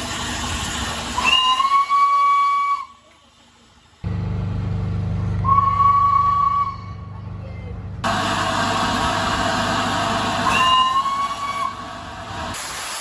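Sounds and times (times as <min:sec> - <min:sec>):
steam locomotive whistle: 0:01.2 - 0:03.0, 0:05.4 - 0:07.0, 0:10.4 - 0:11.8.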